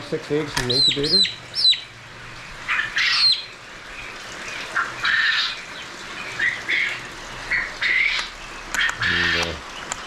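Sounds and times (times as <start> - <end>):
poultry calling: 2.6 - 3.6, 4.5 - 9.6.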